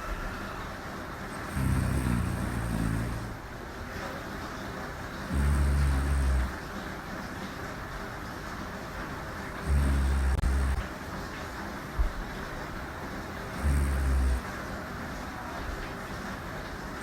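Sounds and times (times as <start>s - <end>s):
background hiss: 0.0s - 17.0s
woman snoring: 1.3s - 3.4s, 5.3s - 6.6s, 9.6s - 10.9s, 13.6s - 14.4s.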